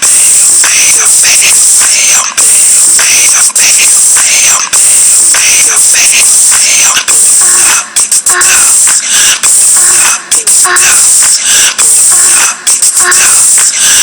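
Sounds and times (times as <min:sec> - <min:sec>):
distorted hip hop song: 0:00.0 - 0:14.0.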